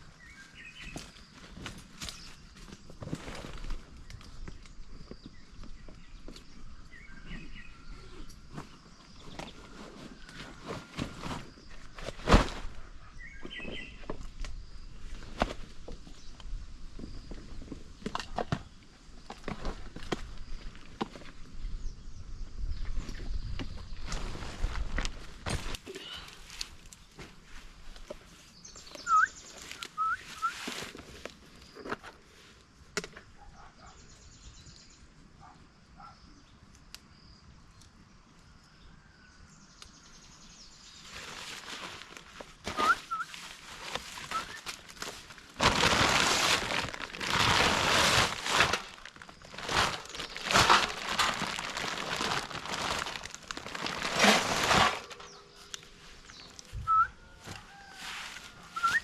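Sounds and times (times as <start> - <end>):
loud rustling: 41.2 - 55.4.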